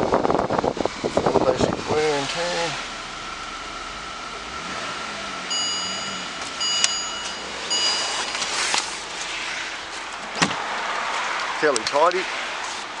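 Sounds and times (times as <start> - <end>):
car warning chime: 2.7 - 9.7.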